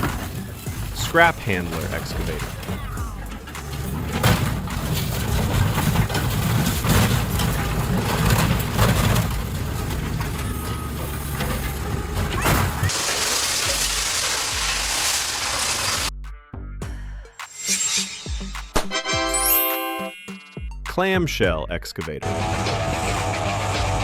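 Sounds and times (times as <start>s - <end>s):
excavator engine rumbling: 0.0s - 16.1s
hissing clattering noise: 0.0s - 16.1s
metal clanking and crashing: 0.0s - 16.1s.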